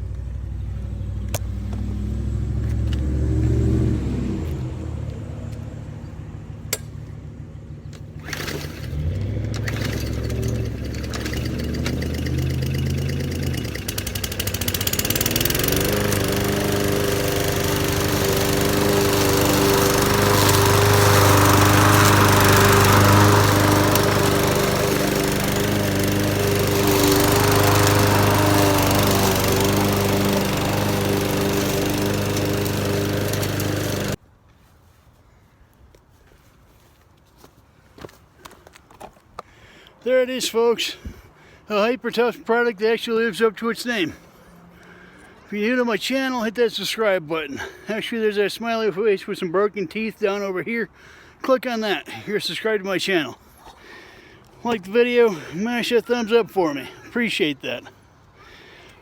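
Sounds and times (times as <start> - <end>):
lawn mower engine running: 5.9 - 34.2
grass-cutting hiss: 9.7 - 34.2.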